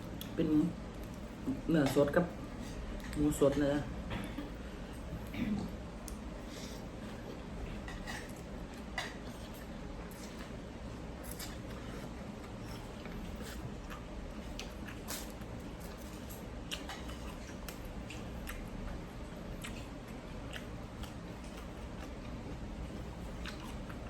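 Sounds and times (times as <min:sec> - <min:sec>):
steady low hum: 0:00.0 - 0:24.0
person chewing: 0:05.2 - 0:24.0.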